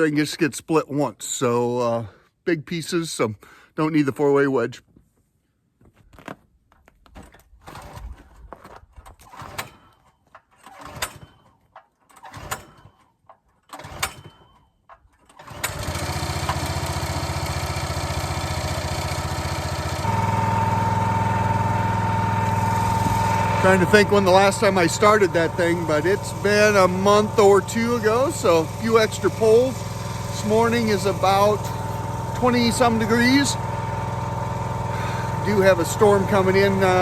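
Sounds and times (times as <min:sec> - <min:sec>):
starter rope pulls: 0:06.1 - 0:37.0
small gas engine sputtering and running: 0:07.6 - 0:13.0, 0:13.7 - 0:14.6, 0:15.2 - 0:37.0.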